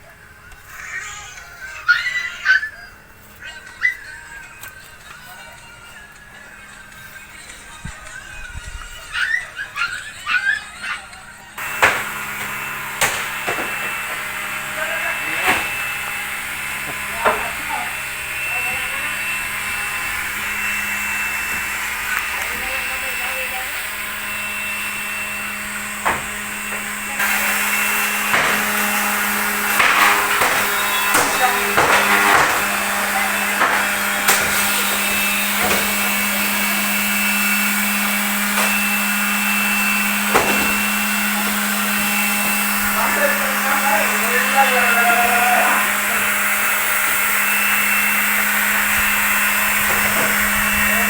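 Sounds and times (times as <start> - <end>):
mechanical hum: 0.0 - 51.0
sharp knocks: 11.6 - 18.5, 25.4 - 36.5, 40.2 - 41.9
clattering strokes: 23.8 - 51.0.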